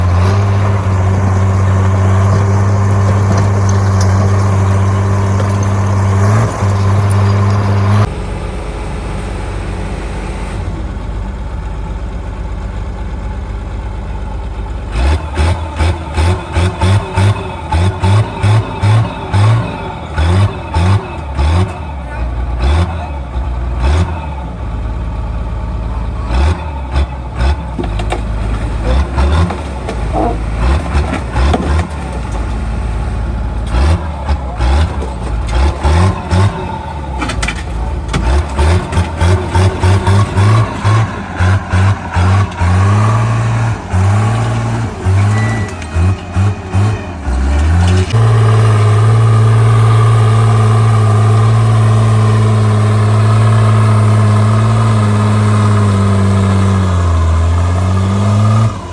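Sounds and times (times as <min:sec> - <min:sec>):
metallic clanks and knocks: 0:00.0 - 0:08.1, 0:27.7 - 0:48.2
bulldozer diesel engine: 0:00.0 - 0:58.9.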